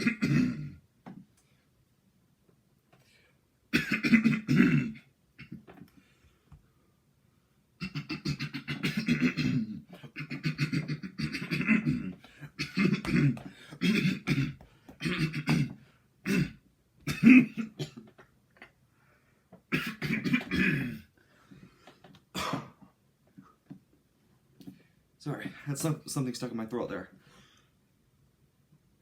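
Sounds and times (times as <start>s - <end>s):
man clearing his throat: 0.0s - 0.8s, 3.7s - 5.7s, 7.8s - 18.1s, 19.7s - 21.1s, 22.4s - 22.9s.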